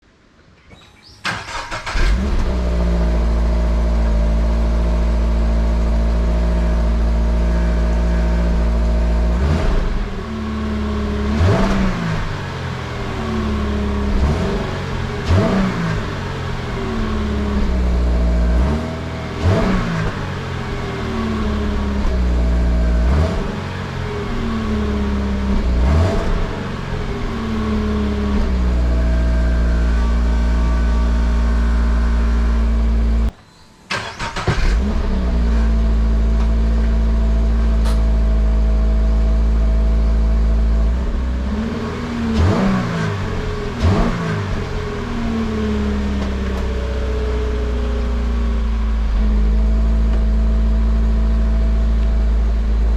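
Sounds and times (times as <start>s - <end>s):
engine throttle blips: 0.7s - 4.2s, 33.9s - 38.7s
car engine starting: 0.7s - 52.9s
car engine idling: 1.2s - 52.9s.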